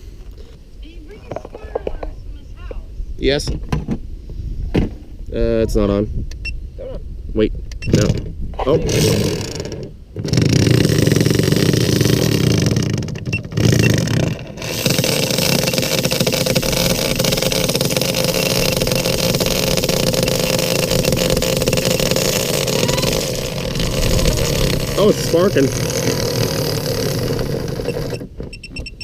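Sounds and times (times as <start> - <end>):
electric toothbrush motor buzzing: 8.9 - 28.2.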